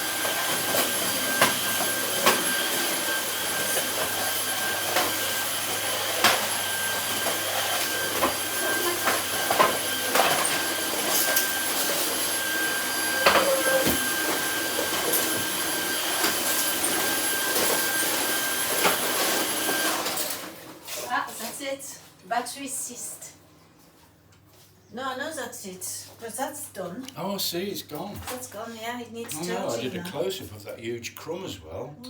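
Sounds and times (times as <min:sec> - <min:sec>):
vacuum cleaner whining: 0:00.0 - 0:21.7, 0:29.3 - 0:30.4.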